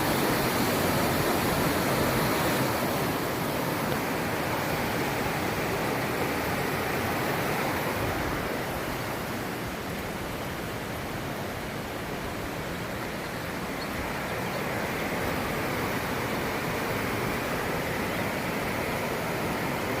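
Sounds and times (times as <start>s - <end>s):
river water rushing: 0.0s - 20.0s.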